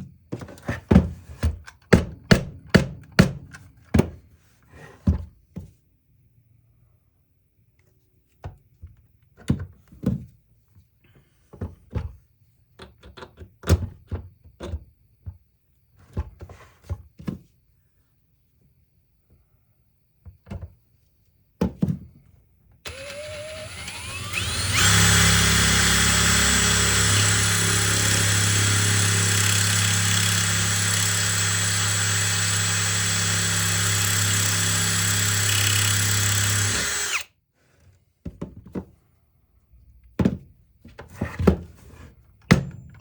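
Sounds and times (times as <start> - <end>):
drill whirring: 22.8 - 37.3.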